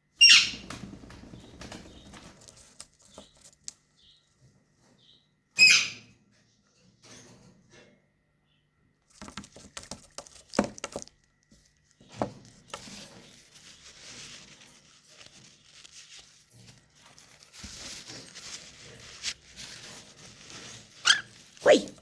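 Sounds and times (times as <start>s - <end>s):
rustling and crinkling: 1.6s - 4.0s, 9.1s - 22.0s.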